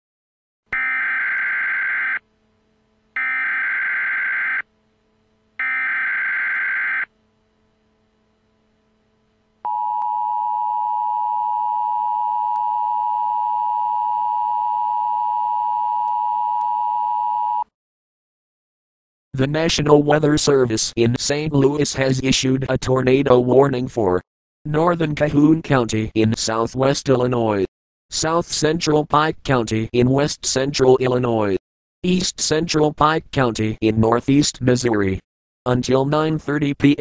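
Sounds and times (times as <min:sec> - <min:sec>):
screeching digital header tones: 0:00.8 - 0:02.2, 0:03.2 - 0:04.6.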